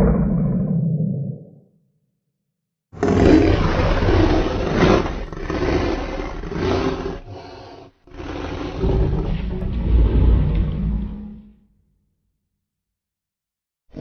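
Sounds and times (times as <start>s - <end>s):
rough monster roar: 3.0s - 11.6s.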